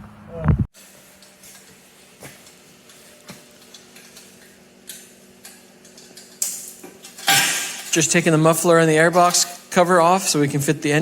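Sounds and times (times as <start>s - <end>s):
hand tools clicking on metal parts: 3.6s - 8.1s.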